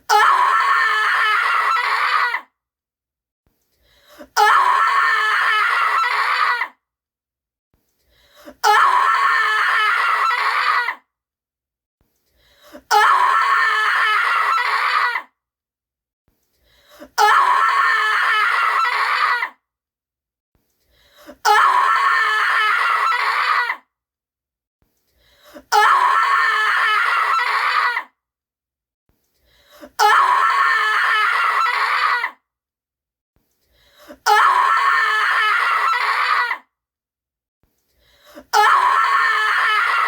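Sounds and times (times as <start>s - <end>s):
woman screaming in terror: 0.1s - 2.5s, 4.4s - 6.8s, 8.6s - 11.0s, 12.9s - 15.3s, 17.2s - 19.6s, 21.5s - 23.8s, 25.7s - 28.1s, 30.0s - 32.4s, 34.3s - 36.7s, 38.5s - 40.0s.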